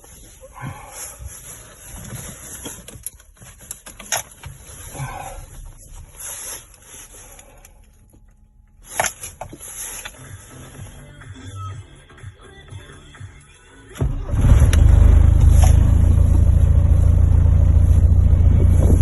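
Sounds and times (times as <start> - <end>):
diesel engine running: 14.0 - 19.0.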